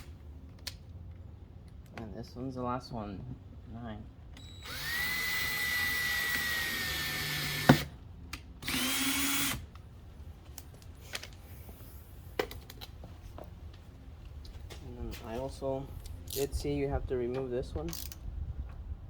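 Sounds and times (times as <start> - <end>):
power drill drilling plastic: 4.4 - 7.9, 8.6 - 9.6.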